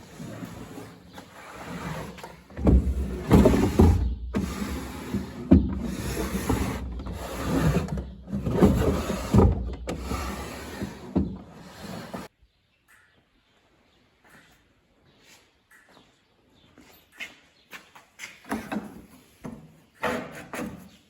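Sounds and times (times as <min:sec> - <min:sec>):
wood rubbing and scraping: 0:00.0 - 0:12.3.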